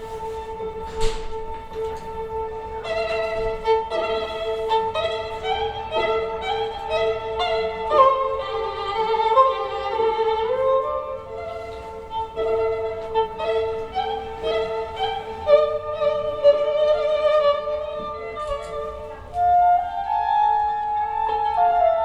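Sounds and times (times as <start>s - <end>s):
slow string-like melody: 0.0s - 22.0s.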